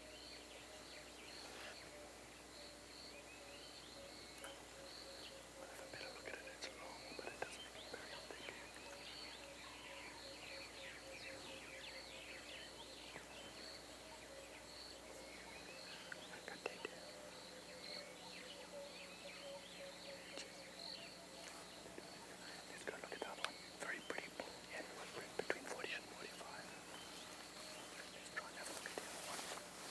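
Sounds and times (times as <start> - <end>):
small birds chirping: 0.0 - 29.9
faint clicks: 22.7 - 27.1.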